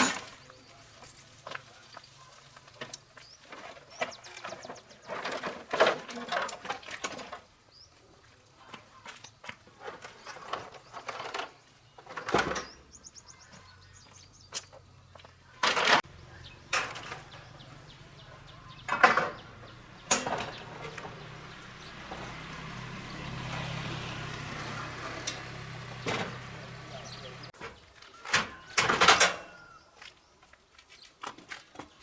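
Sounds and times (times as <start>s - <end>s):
tools and metal parts clattering: 0.0s - 1.5s, 3.6s - 7.4s, 9.2s - 12.7s, 15.6s - 27.5s, 28.4s - 29.6s.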